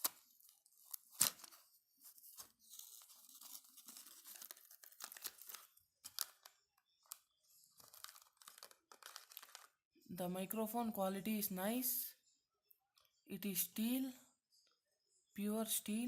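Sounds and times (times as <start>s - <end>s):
wrapping tearing and crinkling: 0.0s - 9.8s.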